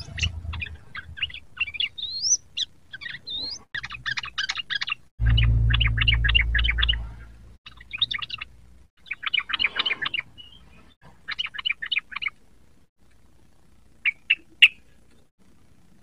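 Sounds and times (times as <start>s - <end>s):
bird singing chattering notes: 0.0s - 7.1s.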